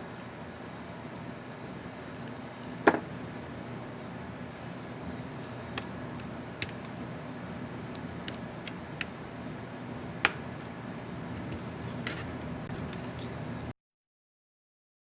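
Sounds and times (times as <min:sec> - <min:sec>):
steady low hum: 0:00.0 - 0:13.7.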